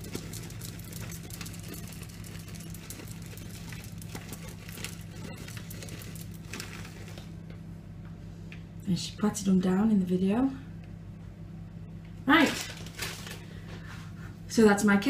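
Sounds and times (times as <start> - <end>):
chocolate chips pattering on batter: 0.0 - 7.3
steady low hum: 0.0 - 15.0.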